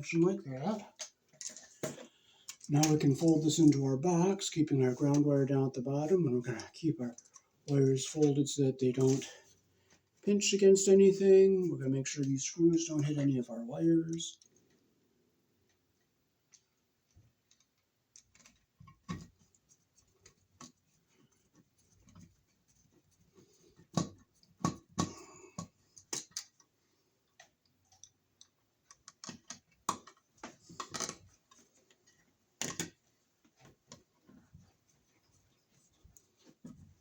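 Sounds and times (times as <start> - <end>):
wires clicking and scraping: 0.0 - 5.4, 16.5 - 37.0.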